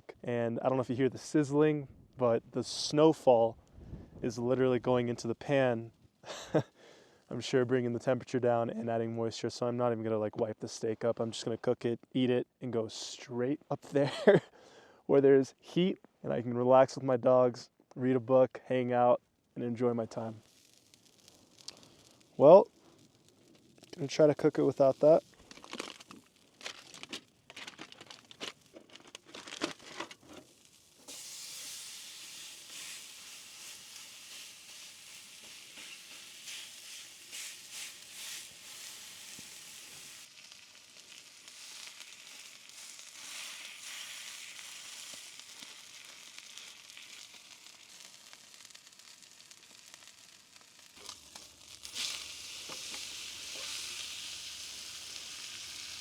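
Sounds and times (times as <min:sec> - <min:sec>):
steak sizzling in frying pan: 0:20.4 - 0:28.8, 0:30.2 - 0:56.0.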